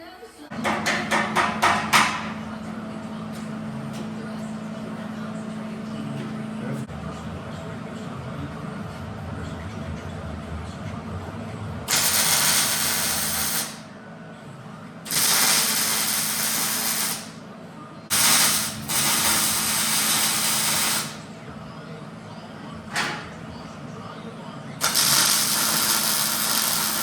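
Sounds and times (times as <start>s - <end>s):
welder sizzling hiss: 11.9s - 13.8s, 15.1s - 17.4s, 18.1s - 21.2s, 24.8s - 27.0s.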